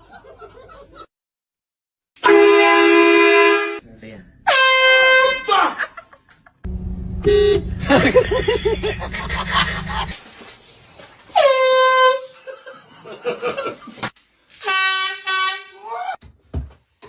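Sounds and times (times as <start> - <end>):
air horn blasts: 2.2 - 3.8, 4.5 - 5.5, 6.7 - 10.2, 11.4 - 12.3, 14.6 - 15.8
rumbling noise: 6.6 - 10.2.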